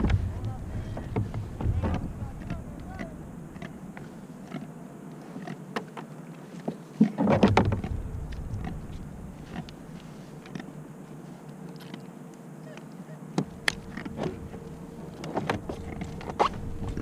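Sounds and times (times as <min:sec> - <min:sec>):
handling knocks and clicks on kayak: 0:00.0 - 0:04.7, 0:05.4 - 0:09.8.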